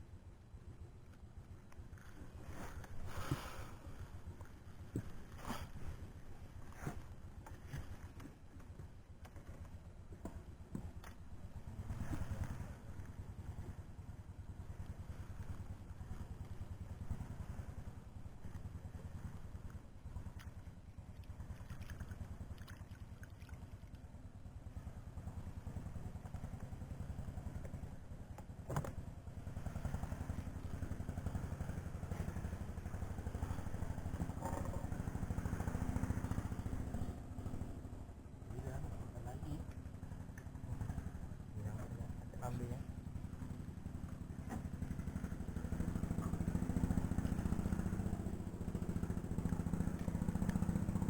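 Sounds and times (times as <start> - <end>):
small engine running: 1.3 - 51.0.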